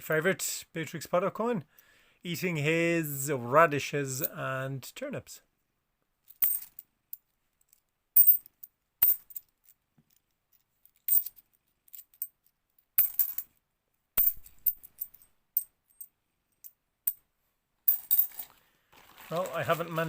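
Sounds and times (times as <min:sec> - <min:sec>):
coins clinking onto a pile: 0:06.4 - 0:06.8, 0:08.2 - 0:09.4, 0:11.1 - 0:12.3, 0:13.0 - 0:13.4, 0:14.2 - 0:16.1, 0:17.9 - 0:18.5.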